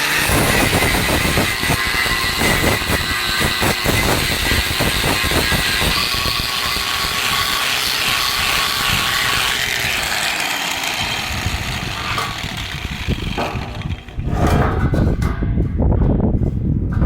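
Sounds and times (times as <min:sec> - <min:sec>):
arc welding crackling hiss: 0:00.0 - 0:09.7.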